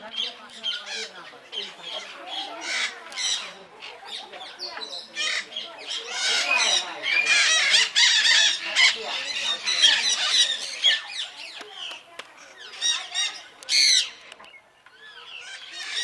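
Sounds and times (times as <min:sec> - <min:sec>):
parrots squawking and screeching: 0:01.9 - 0:04.3, 0:05.0 - 0:11.5, 0:12.6 - 0:14.3, 0:15.0 - 0:16.0.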